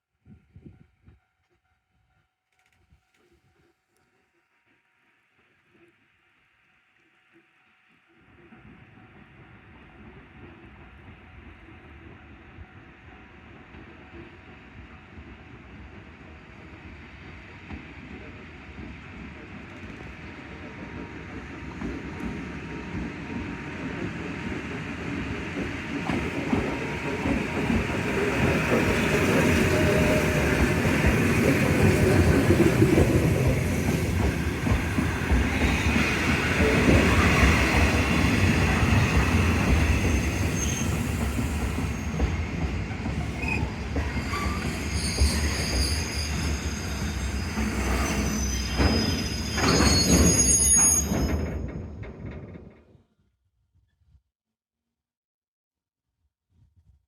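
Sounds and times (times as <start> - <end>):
train rumbling on rails: 8.2 - 53.0
high metallic wheel squeals: 39.7 - 42.3, 43.3 - 51.7.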